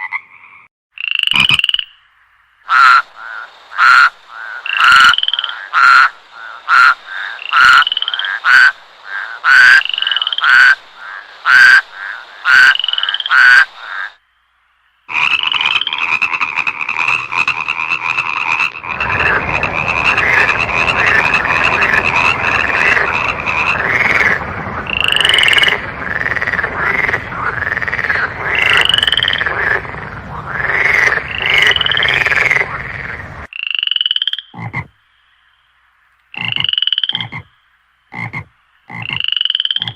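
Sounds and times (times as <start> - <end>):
single frog calling: 0.0 - 14.2, 33.5 - 39.9
chorus of frogs trilling: 2.6 - 14.2, 15.1 - 39.9.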